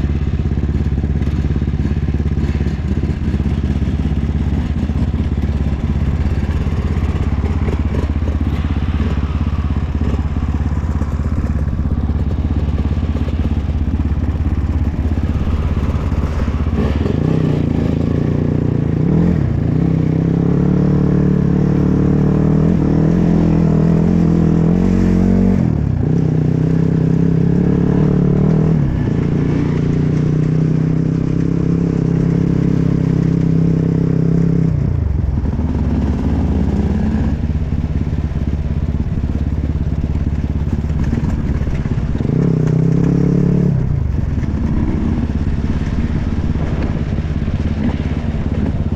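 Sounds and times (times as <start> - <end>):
dirt bike engine revving: 4.6 - 33.0.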